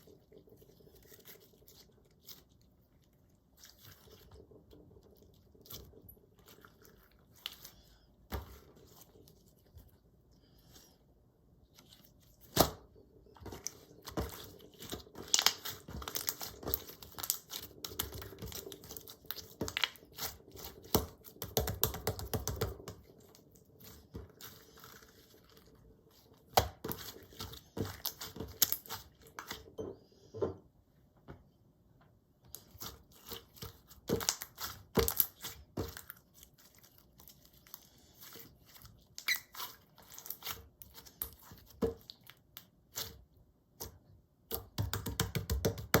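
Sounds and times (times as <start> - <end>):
slime crackling and popping: 13.9 - 23.4.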